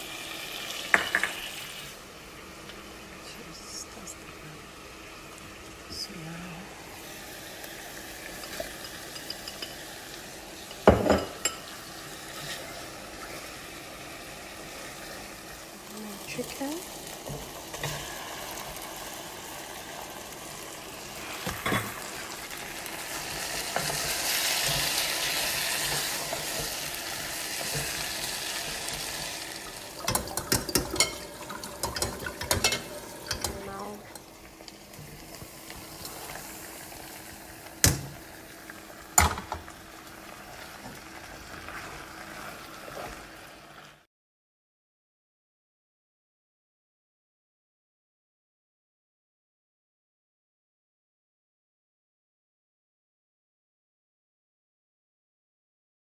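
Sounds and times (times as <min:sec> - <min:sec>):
food sizzling in a pot: 0:00.0 - 0:44.1
spoon stirring: 0:08.4 - 0:09.8, 0:23.1 - 0:34.3.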